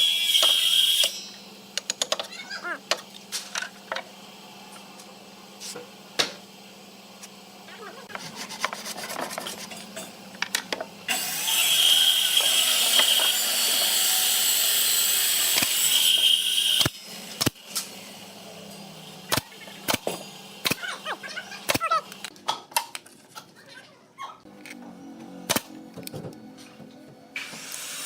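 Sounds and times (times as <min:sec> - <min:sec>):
power tool whining: 0:11.1 - 0:17.4.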